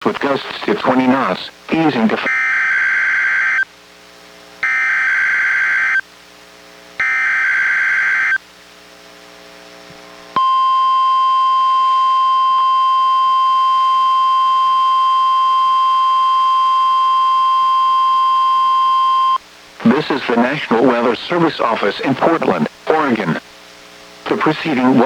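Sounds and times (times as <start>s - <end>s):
steady warning alarm tone: 2.2s - 3.6s, 4.6s - 6.0s, 7.0s - 8.4s, 10.4s - 19.4s.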